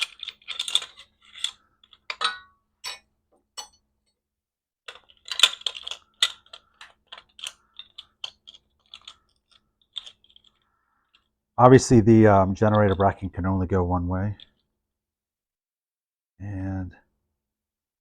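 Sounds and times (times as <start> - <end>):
metal parts and tools clinking: 0.0 - 3.9, 4.9 - 11.3.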